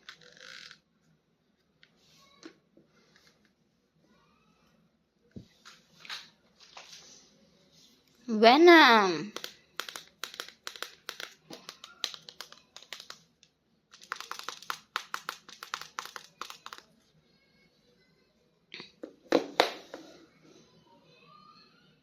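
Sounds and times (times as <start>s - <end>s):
plastic packaging crinkling: 9.4s - 13.2s, 13.9s - 16.9s.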